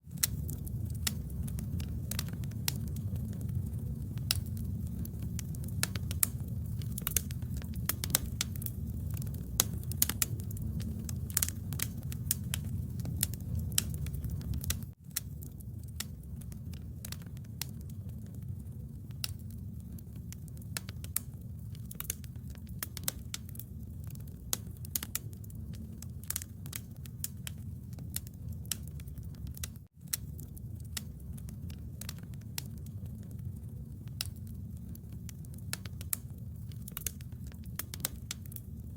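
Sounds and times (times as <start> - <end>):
bonfire crackling: 0.0 - 38.9.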